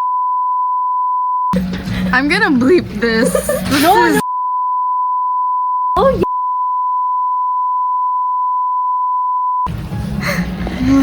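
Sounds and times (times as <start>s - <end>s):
censor bleep tone: 0.0s - 1.6s, 4.2s - 9.7s
person speaking: 2.1s - 4.2s.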